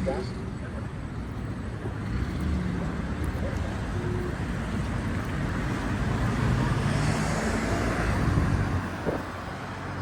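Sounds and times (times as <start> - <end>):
vehicle passing by: 3.8 - 10.0.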